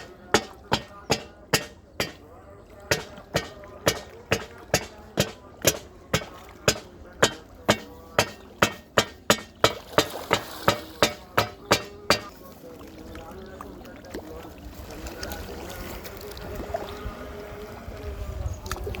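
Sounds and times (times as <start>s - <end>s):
sharp knocks: 0.0s - 2.2s, 2.9s - 12.3s.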